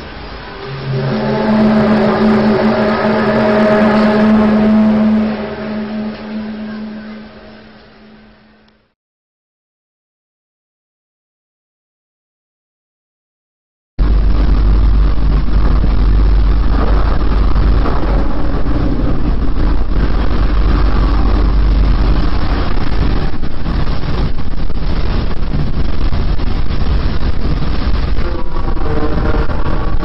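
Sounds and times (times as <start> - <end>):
low rumble: 0.0 - 9.0, 14.0 - 30.0.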